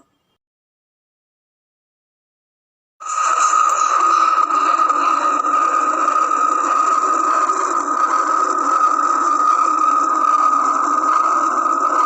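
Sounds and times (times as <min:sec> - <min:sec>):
high-pitched whine: 0:03.0 - 0:12.0.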